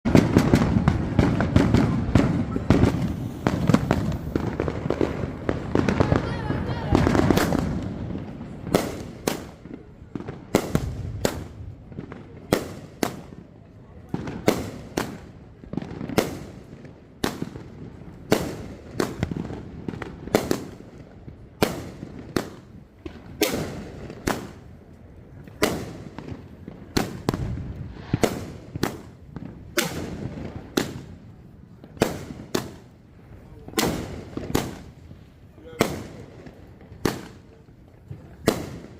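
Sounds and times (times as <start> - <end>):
firework bangs: 0.0 - 38.9
low rumble after bangs: 27.3 - 28.9.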